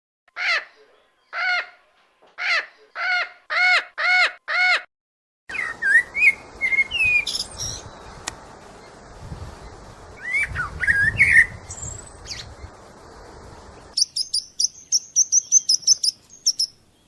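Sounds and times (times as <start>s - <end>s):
birds chirping and whistling: 5.5s - 12.9s, 13.6s - 17.0s.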